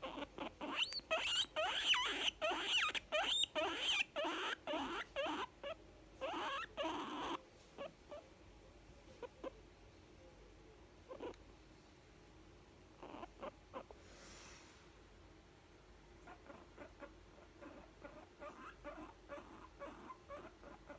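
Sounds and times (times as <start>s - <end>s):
guinea pig squeaky calls: 0.0s - 8.3s, 9.1s - 9.6s, 11.0s - 11.4s, 12.9s - 14.0s, 16.2s - 20.9s.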